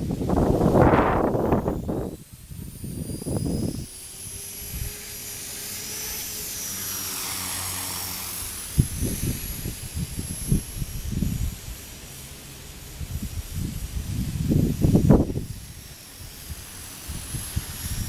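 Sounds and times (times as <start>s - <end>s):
wind buffeting microphone: 0.0s - 5.4s, 8.0s - 11.8s, 12.9s - 18.0s
rc helicopter motor whine: 0.0s - 18.0s.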